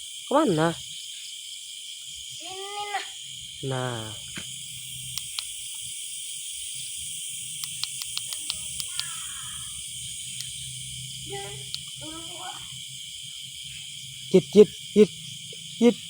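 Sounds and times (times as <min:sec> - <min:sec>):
crickets and insects chirping: 0:00.0 - 0:16.0
sharp clicks: 0:05.1 - 0:05.5, 0:07.6 - 0:09.2, 0:10.4 - 0:10.6, 0:11.6 - 0:12.0.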